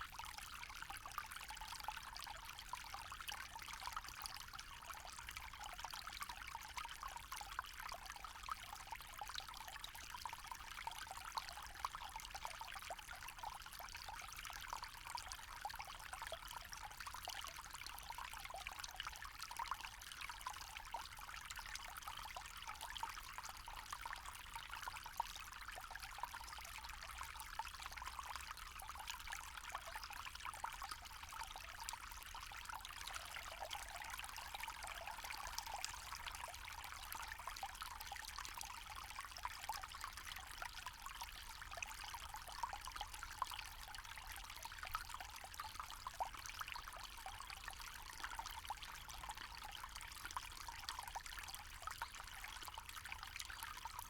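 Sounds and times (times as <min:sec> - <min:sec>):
stream babbling over stones: 0:30.4 - 0:40.1.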